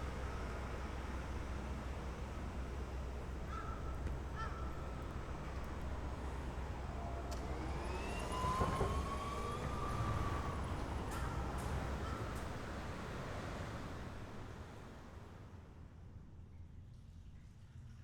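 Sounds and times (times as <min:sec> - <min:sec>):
crow cawing: 0:03.5 - 0:03.8.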